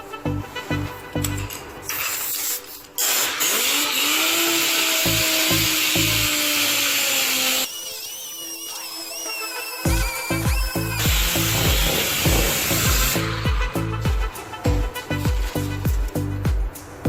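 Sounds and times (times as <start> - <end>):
loud steady hiss: 1.9 - 17.0
hip-hop music: 8.6 - 17.0.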